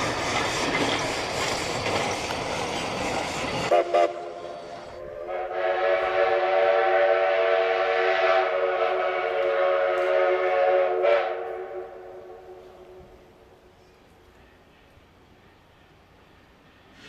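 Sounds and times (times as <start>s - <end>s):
steam locomotive whistle: 3.6s - 13.2s.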